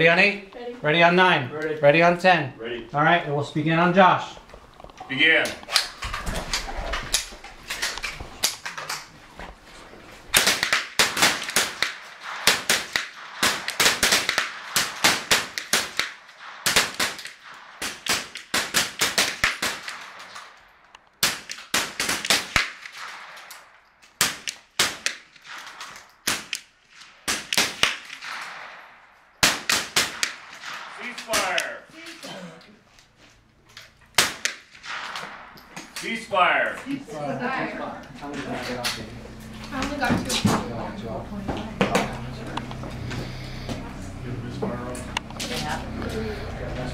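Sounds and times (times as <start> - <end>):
rifle shots cracking: 10.3 - 32.3, 34.1 - 36.2.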